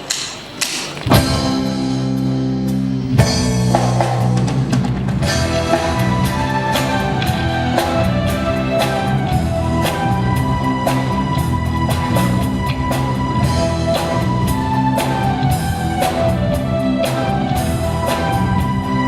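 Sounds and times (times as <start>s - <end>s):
drum kit beat: 0.0s - 19.0s
rock band playing: 0.0s - 19.0s
guitar chords: 0.9s - 14.8s.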